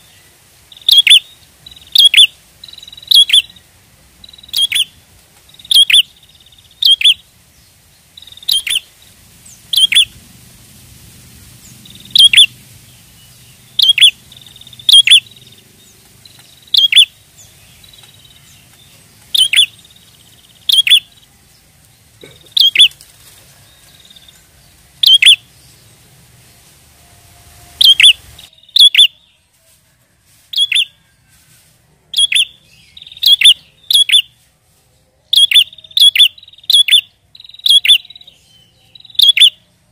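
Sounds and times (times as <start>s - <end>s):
bird chirping sharply: 0.0s - 3.6s, 4.2s - 7.2s, 8.2s - 8.9s, 9.5s - 10.2s, 11.6s - 21.3s, 22.5s - 23.0s, 25.0s - 25.9s, 27.8s - 29.4s, 30.5s - 30.9s, 32.1s - 34.3s, 35.3s - 39.6s.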